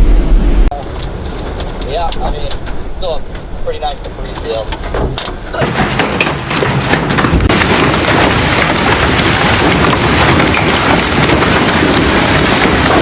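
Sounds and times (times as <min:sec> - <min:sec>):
heavy rain downpour: 0:07.5 - 0:13.0.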